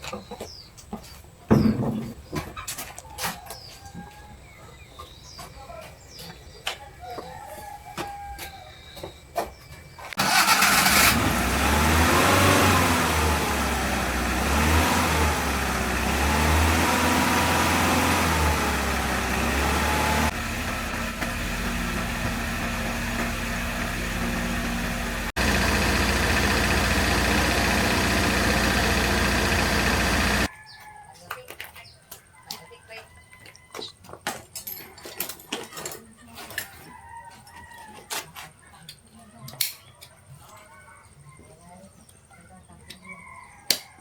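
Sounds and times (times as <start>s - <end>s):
birds chirping: 0.0s - 10.9s
truck engine starting and revving: 10.1s - 30.5s.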